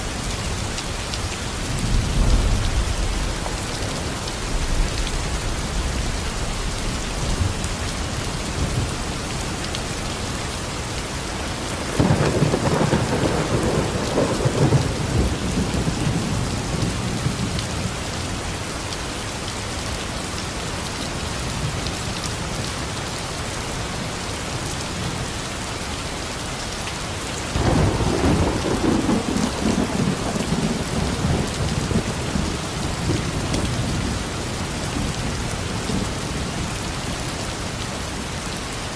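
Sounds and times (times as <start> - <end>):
steady rain falling: 0.0 - 38.9
thunder rolling: 27.6 - 33.1.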